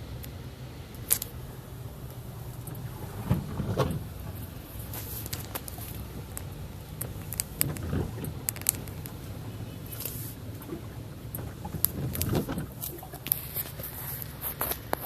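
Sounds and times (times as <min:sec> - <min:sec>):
car driving through water: 0:00.0 - 0:15.0
sharp ticks and knocks: 0:05.3 - 0:09.2.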